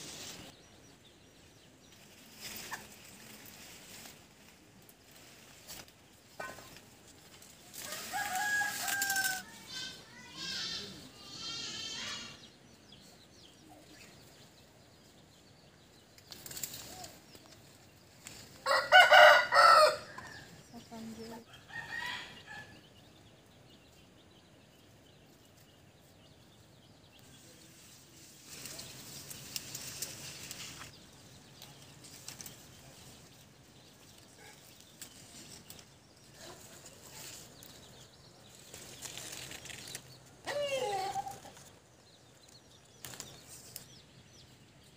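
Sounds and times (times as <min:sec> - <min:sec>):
rooster crowing: 0:07.8 - 0:09.5, 0:18.6 - 0:20.5, 0:21.6 - 0:22.7.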